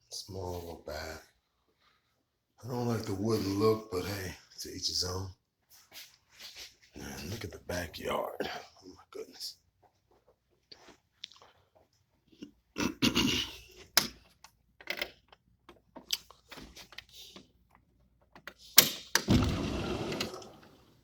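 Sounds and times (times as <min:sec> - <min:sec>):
sliding door rushing open: 0:19.3 - 0:21.0.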